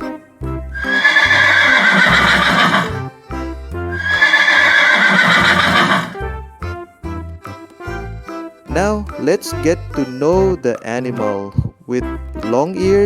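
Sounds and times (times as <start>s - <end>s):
horse whinnying: 0.8s - 3.1s, 3.9s - 6.3s.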